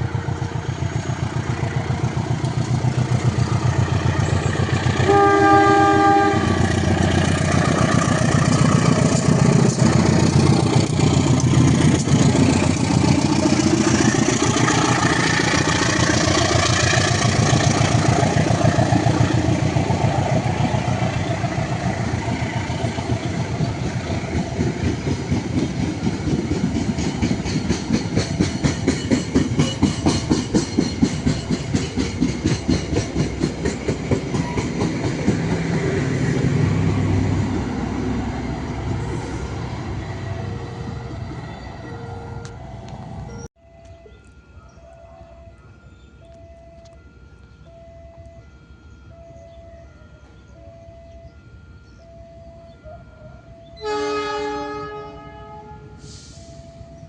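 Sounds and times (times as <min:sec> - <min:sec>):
diesel locomotive engines: 0:00.0 - 0:57.0
train wheels clattering on rails: 0:06.6 - 0:36.5.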